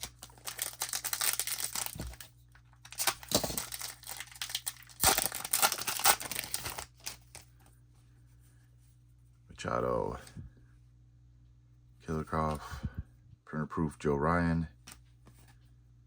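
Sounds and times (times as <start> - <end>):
wrapper tearing and crinkling: 0.0 - 7.5.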